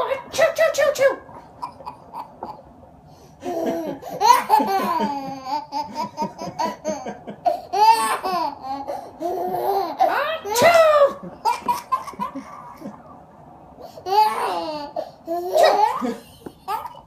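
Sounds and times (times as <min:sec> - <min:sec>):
child laughing: 0:03.4 - 0:13.2, 0:14.0 - 0:17.0.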